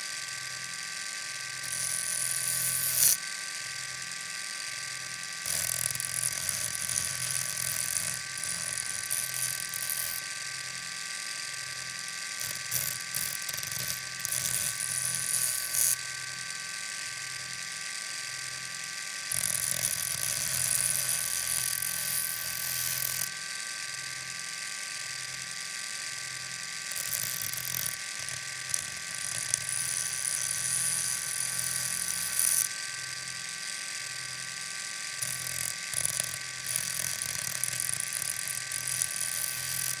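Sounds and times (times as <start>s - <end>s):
electric motor whine: 0.0s - 40.0s
knife grinding hiss: 1.6s - 3.2s, 5.4s - 10.3s, 12.4s - 16.0s, 19.3s - 23.3s, 26.9s - 32.8s, 35.2s - 40.0s.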